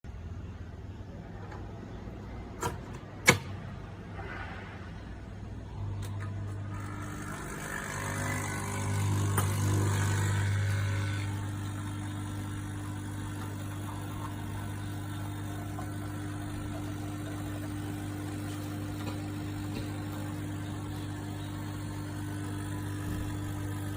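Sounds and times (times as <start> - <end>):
coffee machine pump humming: 5.7 - 23.9.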